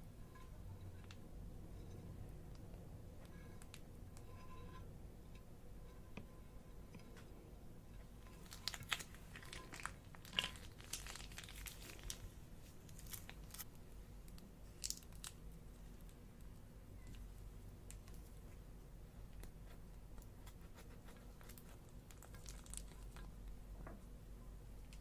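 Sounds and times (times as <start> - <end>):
crinkling handling sounds: 8.0 - 18.6, 19.4 - 23.6.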